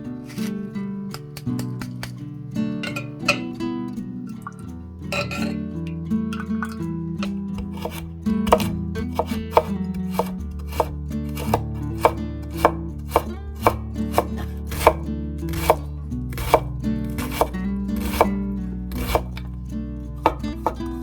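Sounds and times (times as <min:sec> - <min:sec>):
soft background music: 0:00.0 - 0:21.0
knife chopping on cutting board: 0:07.2 - 0:18.3, 0:18.9 - 0:19.5, 0:20.2 - 0:21.0.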